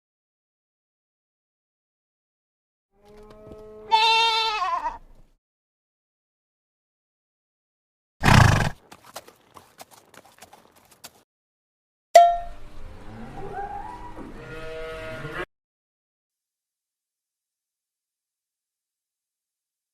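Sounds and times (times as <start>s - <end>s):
horse whinnying: 3.1s - 5.0s, 8.2s - 8.8s
horse snorting: 8.2s - 11.2s.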